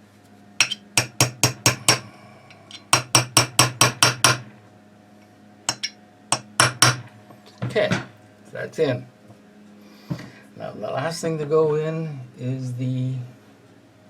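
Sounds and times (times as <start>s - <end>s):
small hammer tapping metal: 0.6s - 2.1s, 2.7s - 4.4s, 5.7s - 7.0s.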